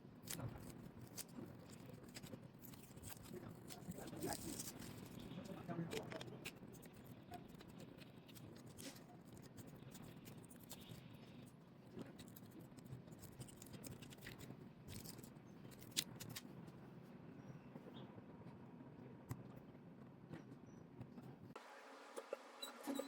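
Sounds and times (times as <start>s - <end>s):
small tools clicking and scratching: 0.2s - 16.5s.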